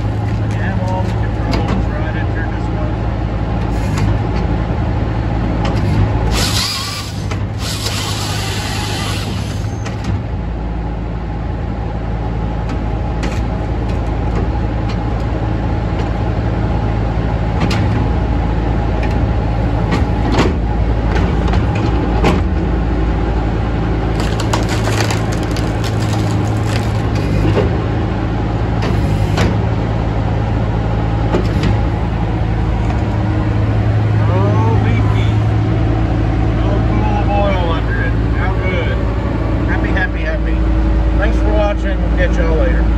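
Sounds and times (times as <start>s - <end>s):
firewood processor engine running: 0.0s - 42.9s
sharp knocks and cracks: 24.1s - 27.8s.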